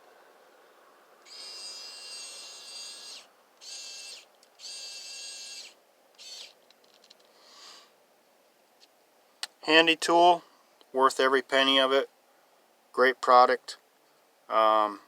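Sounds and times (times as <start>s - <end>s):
electric screwdriver motor whining: 1.2s - 6.6s.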